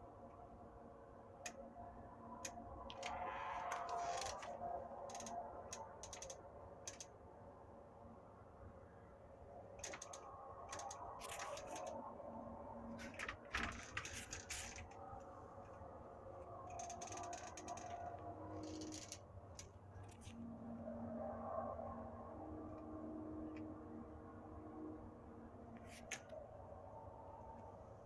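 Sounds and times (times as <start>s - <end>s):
scattered clicks and ticks: 2.4s - 7.2s, 9.8s - 12.0s, 16.6s - 20.4s.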